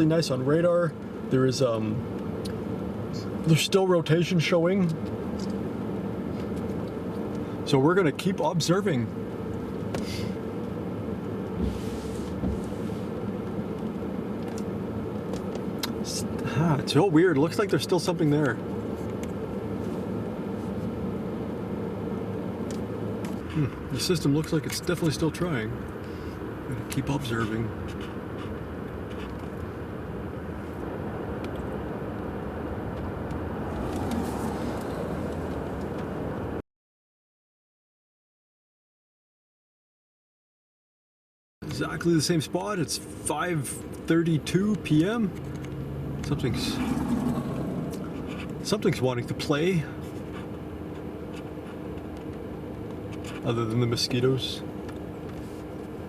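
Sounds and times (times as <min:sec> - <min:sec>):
low rushing noise: 0:46.2 - 0:48.8.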